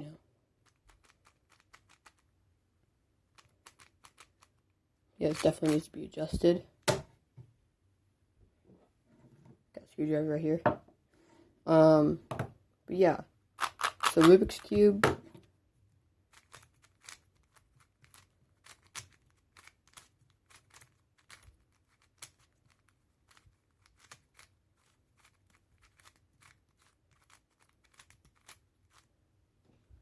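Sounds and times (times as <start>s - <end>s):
puzzle cube clicking and snapping: 0.6s - 2.3s, 3.3s - 4.6s, 5.2s - 5.8s, 13.6s - 15.0s, 16.3s - 29.1s.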